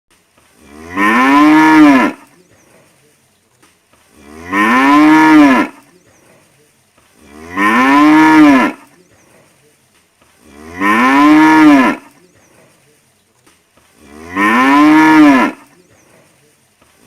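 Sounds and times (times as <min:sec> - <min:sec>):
cow mooing: 0:00.6 - 0:02.3, 0:04.2 - 0:05.8, 0:07.2 - 0:08.9, 0:10.4 - 0:12.2, 0:14.0 - 0:15.7.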